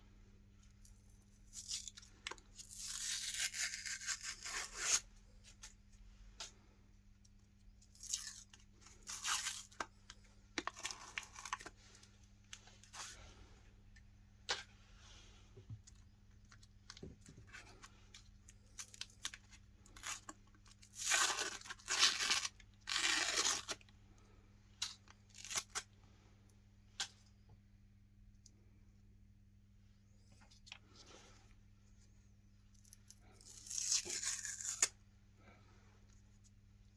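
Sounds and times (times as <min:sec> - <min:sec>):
ice cream cones crunching in grinder: 0:18.5 - 0:23.9.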